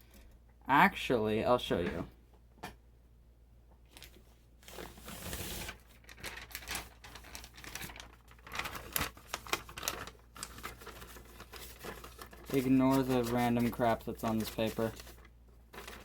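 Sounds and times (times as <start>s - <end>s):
paper rustling and crinkling: 3.9s - 16.0s.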